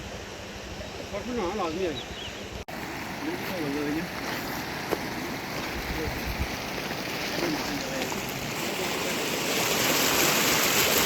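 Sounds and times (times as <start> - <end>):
stream flowing: 2.5 - 11.0.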